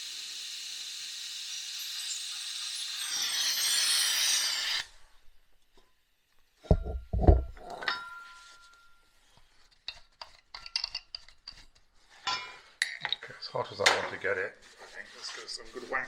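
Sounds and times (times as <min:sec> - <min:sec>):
gas torch hissing: 0:00.0 - 0:05.1
tools clinking: 0:07.6 - 0:09.0, 0:09.8 - 0:13.2
short metallic ring: 0:07.8 - 0:09.1.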